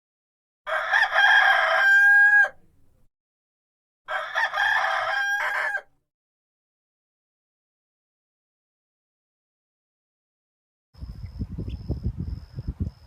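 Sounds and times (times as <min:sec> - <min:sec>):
rooster crowing: 0:00.7 - 0:02.6, 0:04.1 - 0:05.9.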